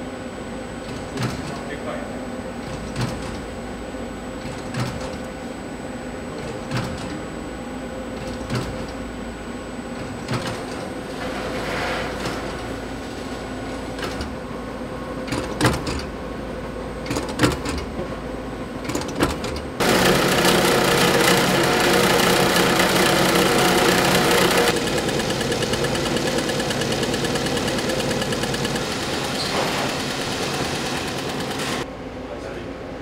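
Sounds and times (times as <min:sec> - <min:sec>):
food-processing machine humming: 0:00.0 - 0:32.7
machine clicks and knocks: 0:00.8 - 0:01.7, 0:02.6 - 0:03.5, 0:04.4 - 0:05.3, 0:06.4 - 0:07.2, 0:08.2 - 0:09.0, 0:10.0 - 0:10.9, 0:14.0 - 0:14.4, 0:15.3 - 0:16.1, 0:17.0 - 0:18.0, 0:18.8 - 0:28.8
loud dense machine din: 0:19.8 - 0:31.9.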